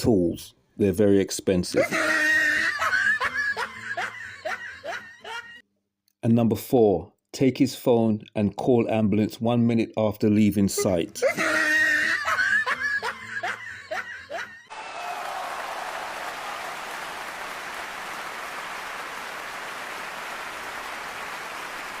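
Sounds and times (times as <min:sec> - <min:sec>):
applause: 0:14.7 - 0:22.0.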